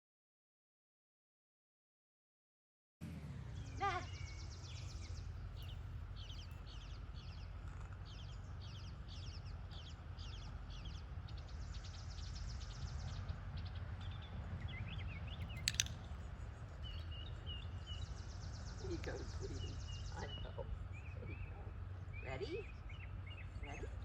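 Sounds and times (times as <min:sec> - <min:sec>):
low steady rumble: 0:03.0 - 0:24.0
sharp click: 0:15.4 - 0:16.1.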